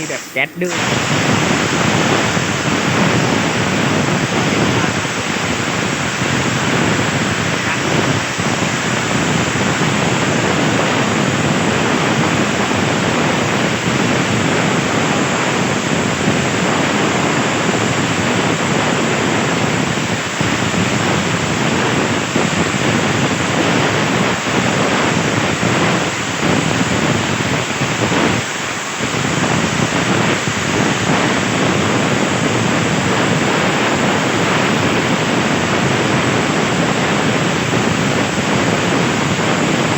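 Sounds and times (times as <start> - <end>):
plasma torch hissing: 0.0 - 25.8.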